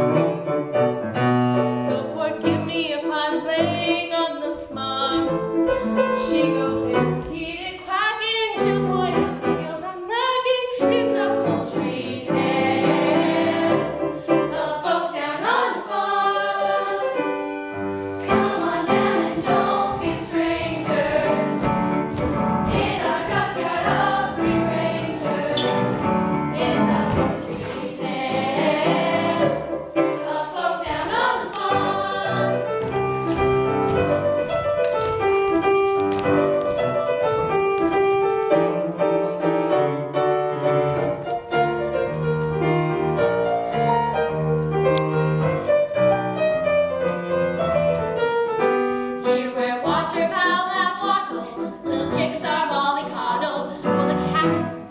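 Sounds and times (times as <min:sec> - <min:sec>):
musical accompaniment: 0:00.0 - 0:54.9
choir singing: 0:11.0 - 0:32.9, 0:49.2 - 0:52.2.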